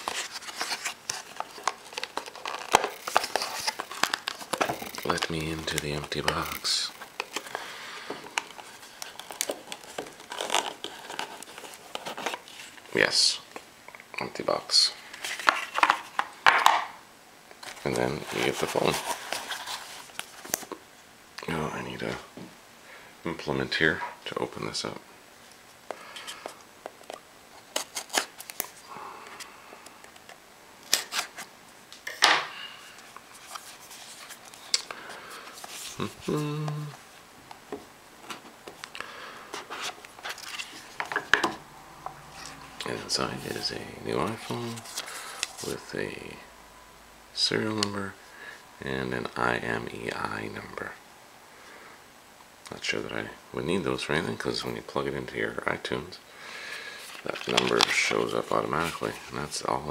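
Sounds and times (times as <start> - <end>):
cardboard packaging rustling: 0.0 - 13.1, 15.1 - 16.8, 17.6 - 20.8, 25.8 - 28.9, 30.1 - 32.3, 33.0 - 46.4, 56.8 - 59.9.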